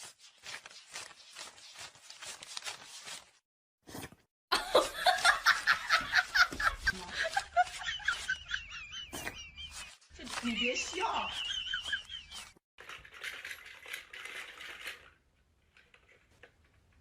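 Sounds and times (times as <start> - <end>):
person laughing loudly: 4.5 - 12.6.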